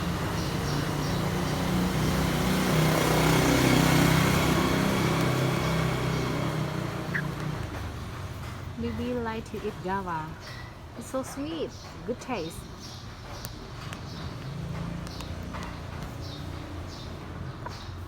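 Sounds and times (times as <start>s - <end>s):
vehicle engine running: 0.0s - 10.2s.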